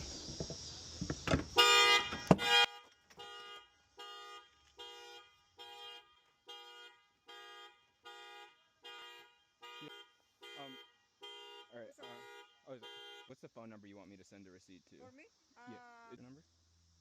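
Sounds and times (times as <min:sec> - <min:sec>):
car alarm horn honking: 0:01.5 - 0:13.5.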